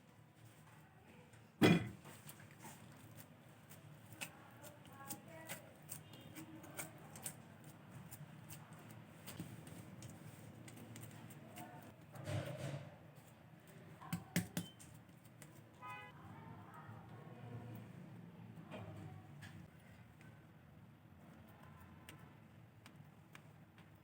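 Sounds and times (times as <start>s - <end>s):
utensils clicking and tapping: 3.1s - 12.3s, 14.0s - 15.6s.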